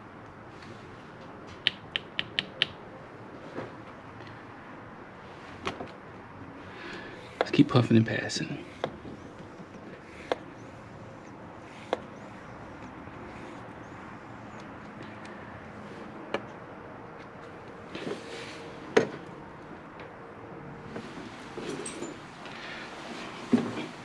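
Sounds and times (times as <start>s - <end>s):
sharp clicks: 1.6s - 2.8s
small air pump running: 6.7s - 14.9s.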